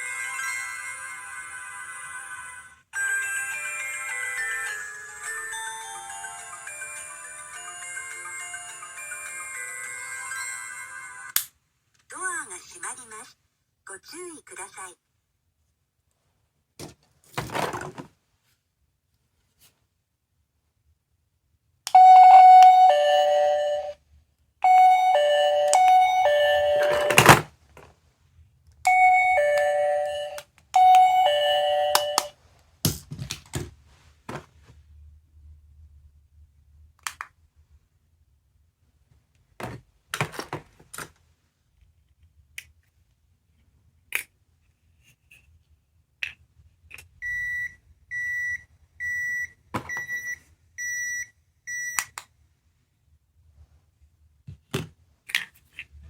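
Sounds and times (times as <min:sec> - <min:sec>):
two-note doorbell chime: 0:22.0 - 0:24.0, 0:24.6 - 0:27.3, 0:28.9 - 0:32.3.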